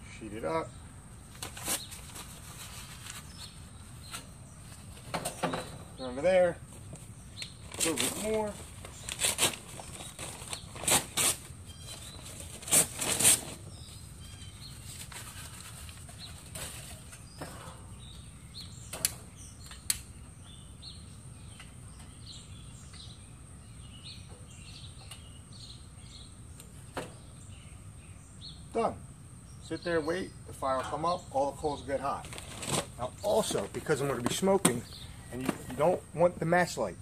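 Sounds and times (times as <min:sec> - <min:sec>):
outdoor background: 0:00.0 - 0:37.0
sharp clicks: 0:18.1 - 0:20.1
paper being crumpled: 0:32.2 - 0:33.0.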